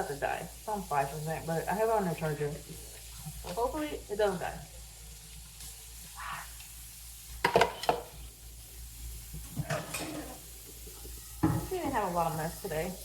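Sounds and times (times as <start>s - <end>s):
dishes clinking: 7.4s - 8.2s, 9.5s - 11.8s
dishes scraping: 7.4s - 8.2s, 9.4s - 11.7s.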